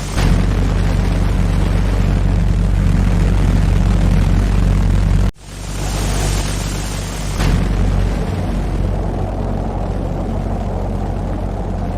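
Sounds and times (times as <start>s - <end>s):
boom-like surge: 0.0s - 11.9s
rocket roaring: 5.8s - 11.9s.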